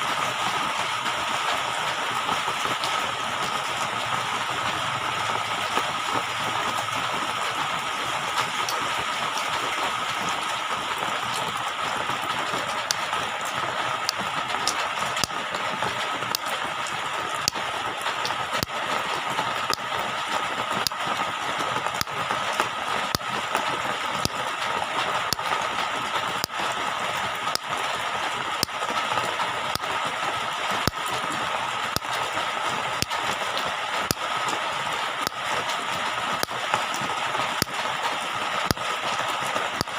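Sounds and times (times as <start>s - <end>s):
irregular clicks: 14.1s - 15.4s, 19.6s - 19.9s, 24.2s - 24.4s, 36.4s - 36.6s.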